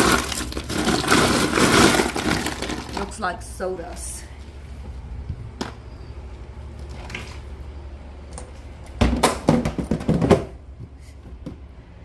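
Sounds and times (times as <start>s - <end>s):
soda cans clinking in a cooler: 0.0s - 3.2s.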